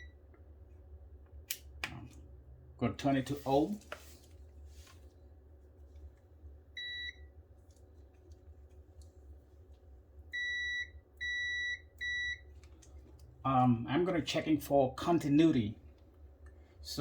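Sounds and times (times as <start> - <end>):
multimeter continuity beeps: 6.8 - 7.3, 10.4 - 12.4.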